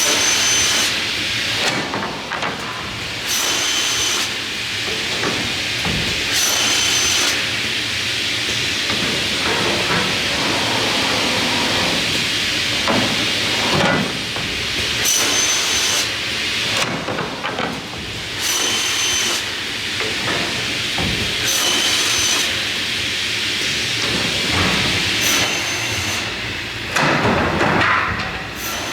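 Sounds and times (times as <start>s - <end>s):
crosscut saw machine noise: 6.3s - 14.4s.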